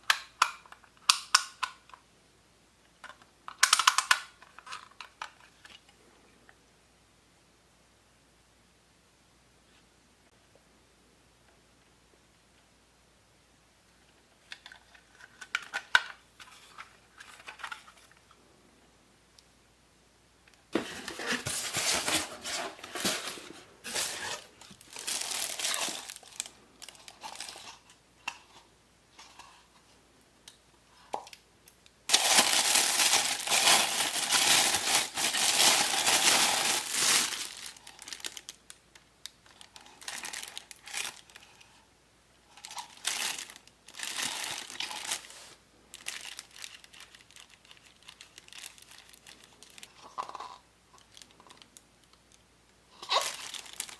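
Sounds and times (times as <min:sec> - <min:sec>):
packing material crinkling: 0:20.8 - 0:28.4, 0:32.1 - 0:41.7, 0:42.5 - 0:51.8, 0:53.0 - 0:53.9.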